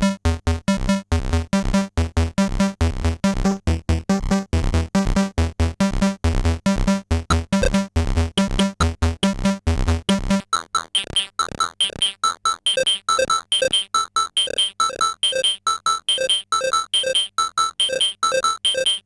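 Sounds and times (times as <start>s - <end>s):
deep bass notes: 7.3s - 10.2s.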